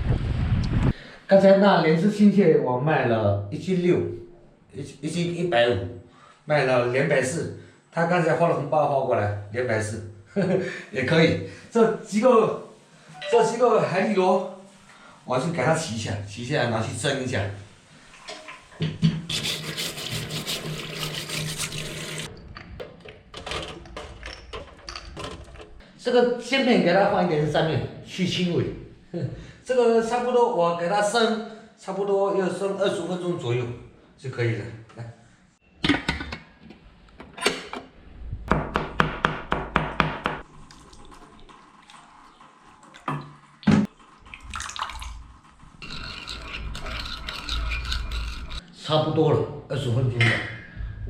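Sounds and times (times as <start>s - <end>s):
tap water running: 18.0s - 22.3s, 40.4s - 48.5s.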